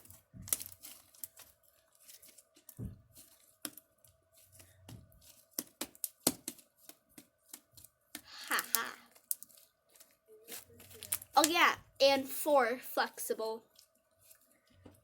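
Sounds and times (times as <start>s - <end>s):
slime kneaded by hand: 0.0s - 11.8s.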